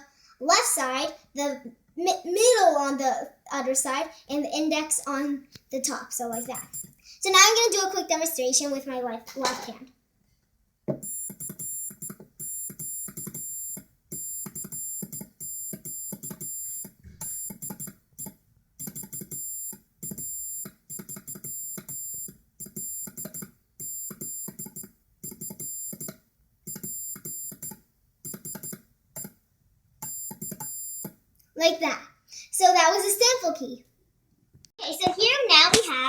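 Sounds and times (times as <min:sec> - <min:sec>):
morse code beeping: 0:06.3 - 0:07.0, 0:10.9 - 0:29.3, 0:30.0 - 0:31.1.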